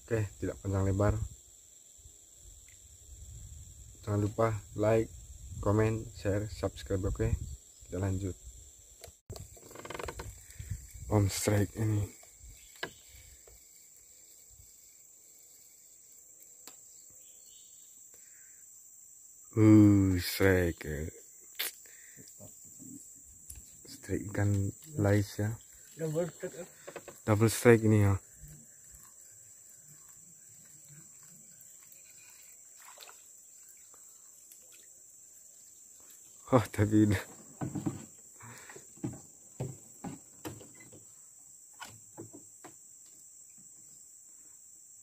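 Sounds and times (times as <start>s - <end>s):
crickets chirring: 0.0s - 45.0s
soft rustle: 9.4s - 16.6s, 23.5s - 36.4s.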